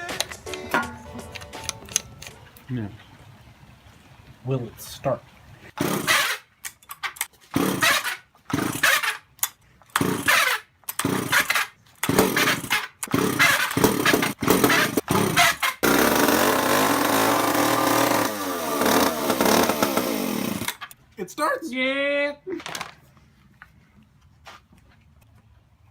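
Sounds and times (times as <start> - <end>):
chainsaw engine running: 5.8 - 6.3, 7.5 - 9.1, 10.0 - 20.9
chainsaw cranking bursts: 5.8 - 6.5, 7.5 - 9.3, 9.9 - 21.0.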